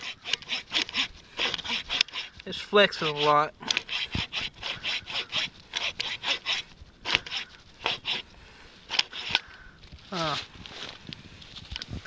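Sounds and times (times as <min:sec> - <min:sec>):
hand saw sawing wood: 0:00.0 - 0:09.4.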